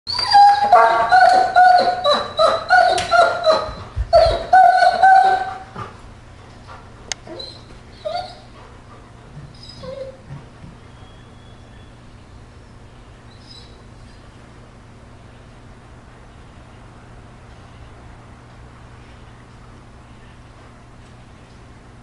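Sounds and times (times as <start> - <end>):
dogs whining and yipping: 0.1 - 5.9, 7.2 - 8.7, 9.4 - 10.4
faint dog whimpers: 7.2 - 8.7, 9.4 - 10.3.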